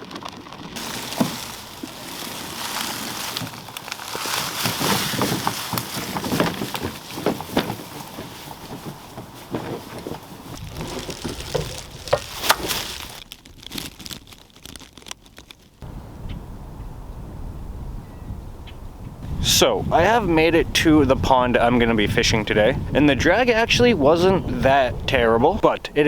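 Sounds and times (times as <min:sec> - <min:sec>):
dry leaves and twigs crunching: 0:00.0 - 0:15.8
kayak dragged over ground: 0:00.0 - 0:16.0
wind rumble on microphone: 0:00.8 - 0:13.2, 0:15.8 - 0:26.0.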